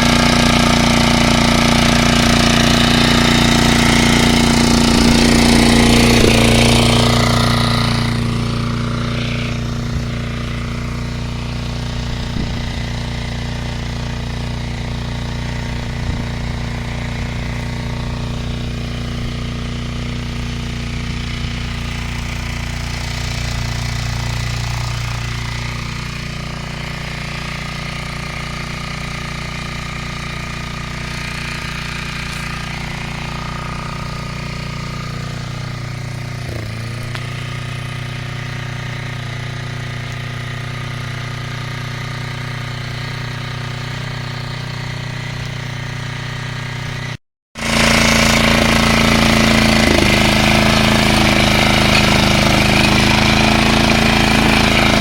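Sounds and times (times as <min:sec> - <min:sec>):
lawn mower engine running: 0:00.0 - 0:55.0.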